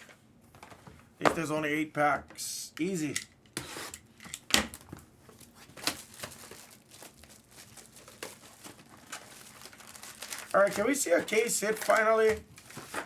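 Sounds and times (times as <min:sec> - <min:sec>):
foil wrappers crinkling and tearing: 0:04.4 - 0:13.0.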